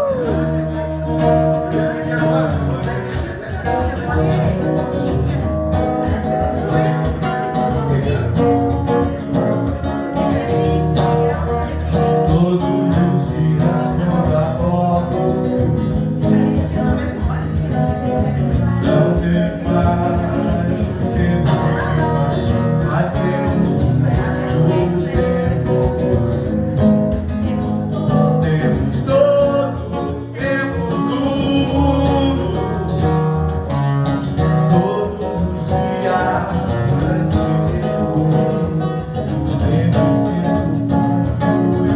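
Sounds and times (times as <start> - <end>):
person singing: 0.0 - 1.4, 27.2 - 33.6
percussion beat: 0.0 - 41.9
plucked strings: 0.0 - 41.9.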